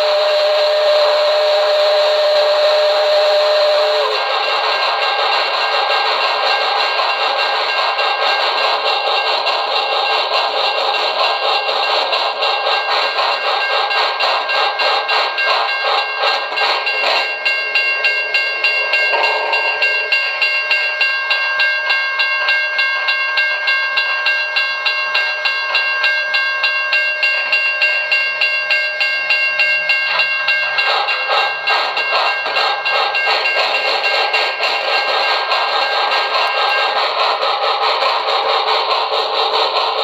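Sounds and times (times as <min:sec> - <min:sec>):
steam locomotive chuffing: 0:00.0 - 0:40.0
steady high tone: 0:15.7 - 0:23.4.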